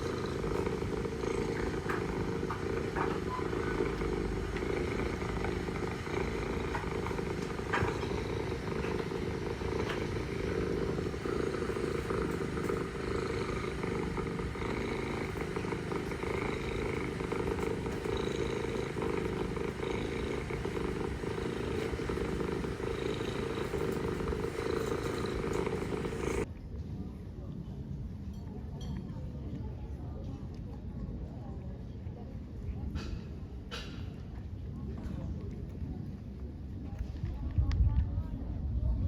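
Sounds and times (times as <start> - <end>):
cat purring: 0.0 - 26.5.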